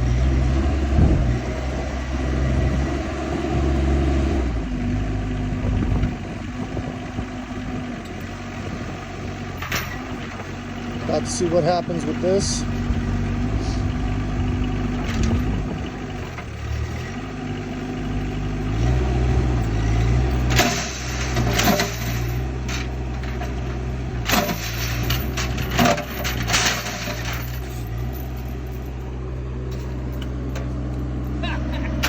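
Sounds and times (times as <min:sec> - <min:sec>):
diesel engine revving: 0:00.0 - 0:32.0
sharp metal clanks and cracks: 0:20.3 - 0:28.9.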